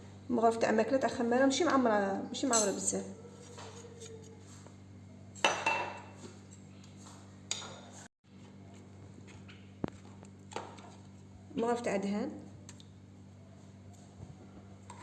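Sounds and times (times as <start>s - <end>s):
spoon clinking against bowl: 2.5s - 2.9s.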